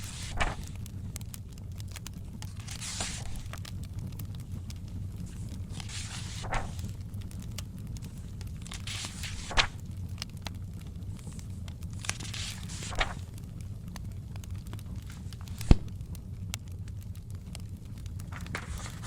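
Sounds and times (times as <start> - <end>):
book pages turning: 0.0 - 1.3, 2.0 - 7.4, 8.0 - 9.8, 11.2 - 13.4, 15.0 - 16.0, 18.2 - 19.0
fire crackling: 0.0 - 19.0.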